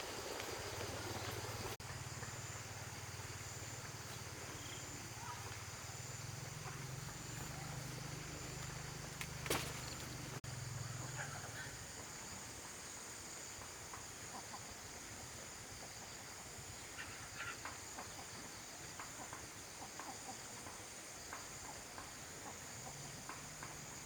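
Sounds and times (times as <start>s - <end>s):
faint chirps: 0.0s - 12.3s.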